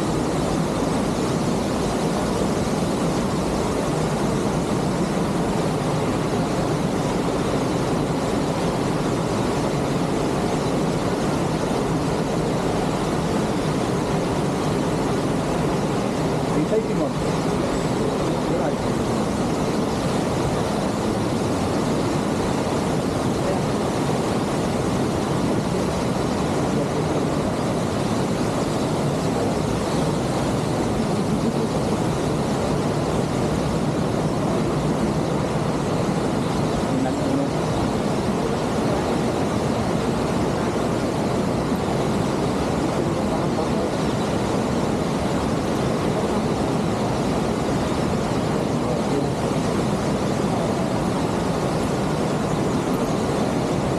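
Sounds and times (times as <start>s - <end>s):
waterfall rushing: 0.0s - 53.9s.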